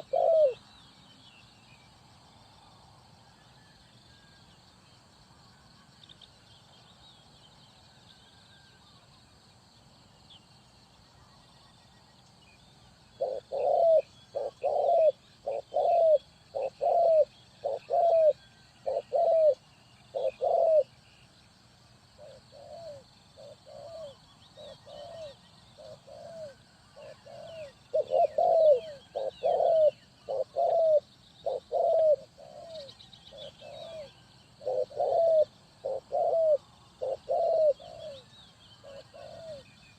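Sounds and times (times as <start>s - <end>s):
dove cooing: 0.0s - 0.7s, 13.1s - 21.1s, 22.2s - 39.7s
small birds chirping: 0.0s - 2.0s, 11.1s - 39.9s.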